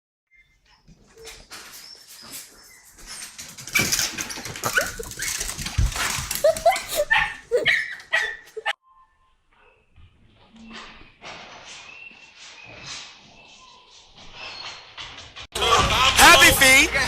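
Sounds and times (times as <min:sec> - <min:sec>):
dog yelping and whimpering: 0:04.5 - 0:08.7.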